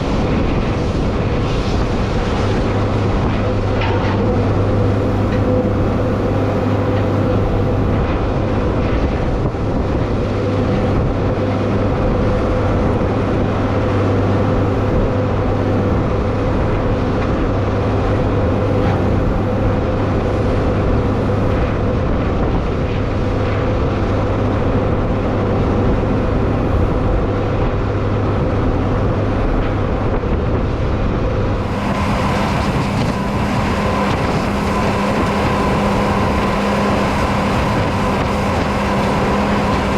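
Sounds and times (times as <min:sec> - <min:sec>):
tractor engine running: 0:00.0 - 0:08.4, 0:31.4 - 0:39.9.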